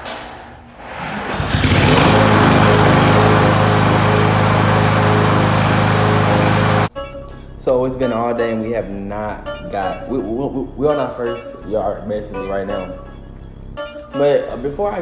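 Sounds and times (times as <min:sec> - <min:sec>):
lawn mower engine running: 0:01.2 - 0:06.9.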